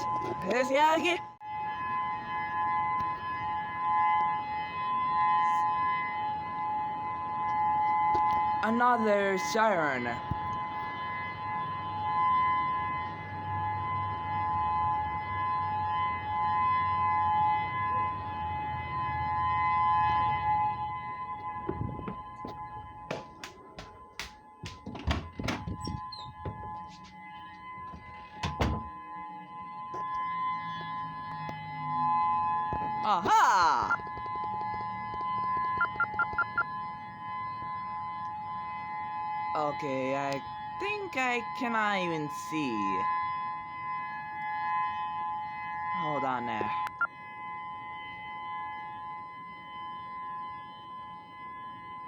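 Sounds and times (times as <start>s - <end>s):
warning siren steady tone: 0.0s - 52.0s
sharp knocks: 21.6s - 26.8s.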